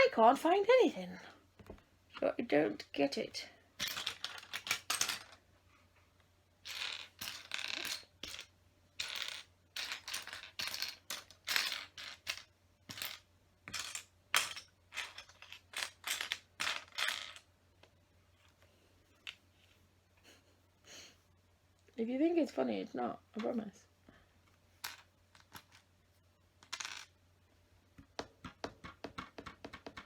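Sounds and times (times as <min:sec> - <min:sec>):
plastic pieces clattering: 0:03.8 - 0:05.4, 0:06.6 - 0:17.5.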